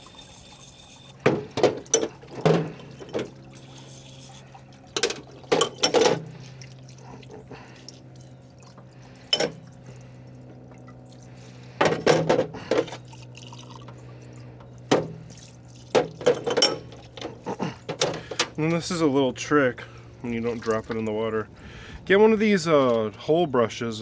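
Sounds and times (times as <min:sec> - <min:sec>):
liquid splashing: 0:00.0 - 0:11.8, 0:12.6 - 0:18.0
parts washer humming: 0:00.0 - 0:24.0.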